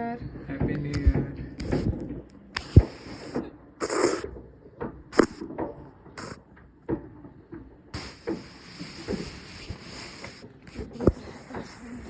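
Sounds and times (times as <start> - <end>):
fireworks bangs and pops: 1.0 - 4.4, 5.1 - 7.1, 8.0 - 12.0
fireworks hissing crackle: 1.6 - 2.0, 2.6 - 4.3, 5.2 - 5.4, 6.2 - 6.4, 8.0 - 12.0.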